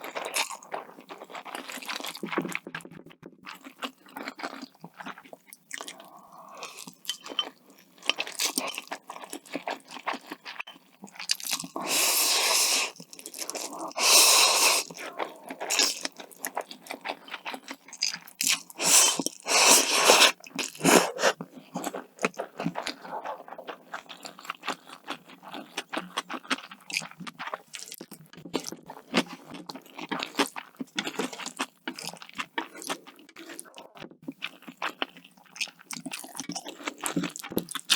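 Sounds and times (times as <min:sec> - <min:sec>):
crunching and chewing food: 0:00.0 - 0:37.9.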